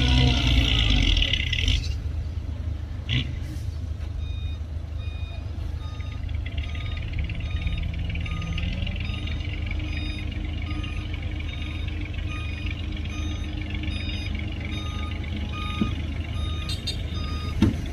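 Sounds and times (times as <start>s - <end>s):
diesel machinery rumbling: 0.0s - 17.9s
reversing alarm beeping: 4.2s - 17.8s.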